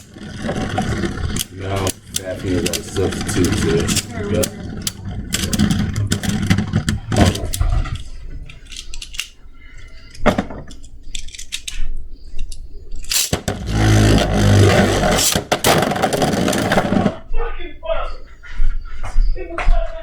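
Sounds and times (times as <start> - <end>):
plastic spinning tops clicking: 0.0 - 9.4, 12.4 - 17.2.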